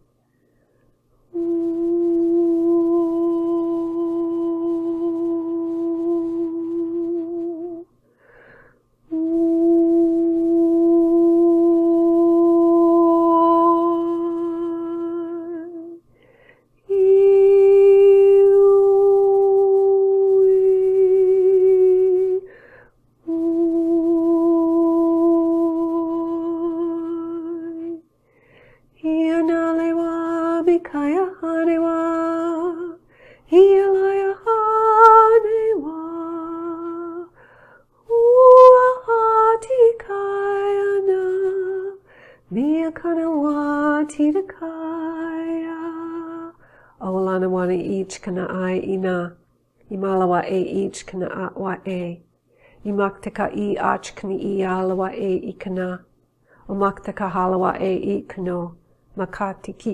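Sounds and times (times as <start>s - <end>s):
woman humming held notes: 1.3s - 7.9s, 9.1s - 16.0s, 16.9s - 28.1s, 29.0s - 37.4s, 38.1s - 49.3s.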